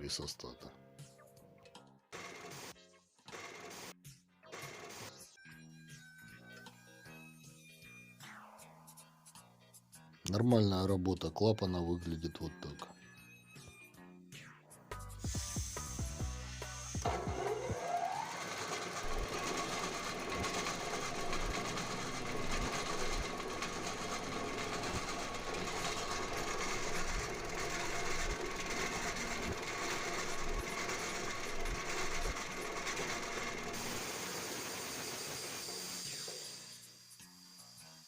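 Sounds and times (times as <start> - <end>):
air compressor motor whining: 15.2 - 37.0.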